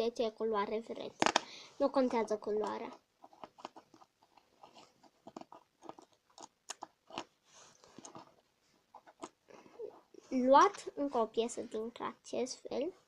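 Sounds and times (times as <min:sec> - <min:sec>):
plastic bricks clicking: 0:01.2 - 0:01.5.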